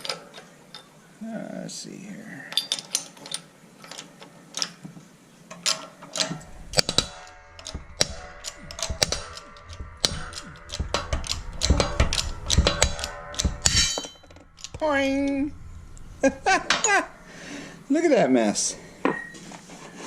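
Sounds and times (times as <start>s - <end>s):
metal clicking and creaking: 0.0s - 0.9s, 2.5s - 4.8s, 5.5s - 19.4s
low rumble: 6.4s - 19.4s.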